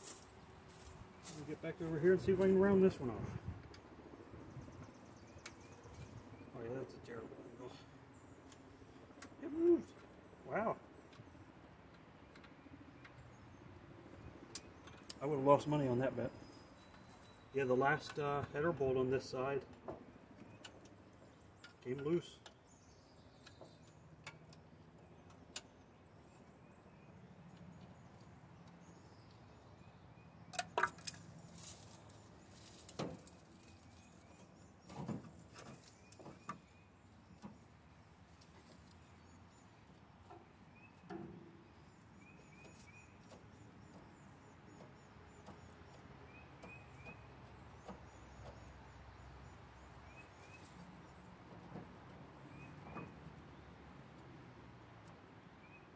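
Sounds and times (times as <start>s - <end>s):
small birds chirping faintly: 0.0s - 55.9s.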